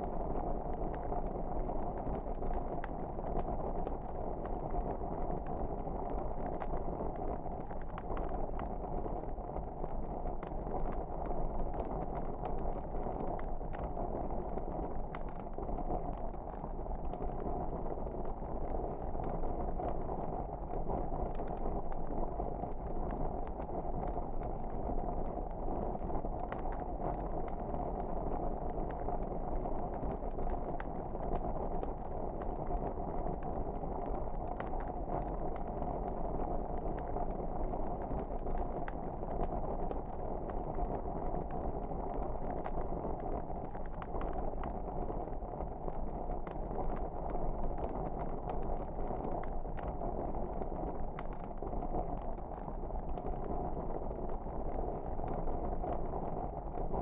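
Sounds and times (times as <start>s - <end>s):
fire crackles and pops: 0.0s - 57.0s.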